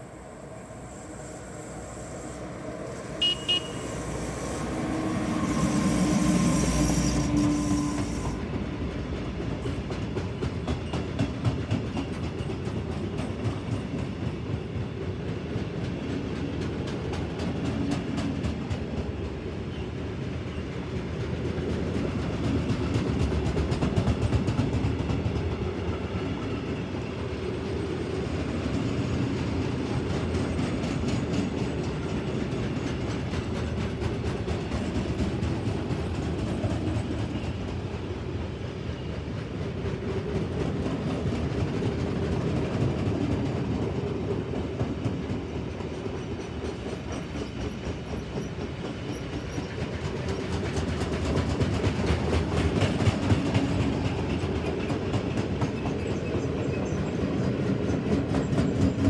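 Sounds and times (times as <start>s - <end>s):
electric locomotive humming: 0.0s - 10.8s
train wheels clicking over rail joints: 0.1s - 8.6s, 9.2s - 19.8s, 28.6s - 38.1s, 38.8s - 59.0s
locomotive horn toots: 1.2s - 8.4s.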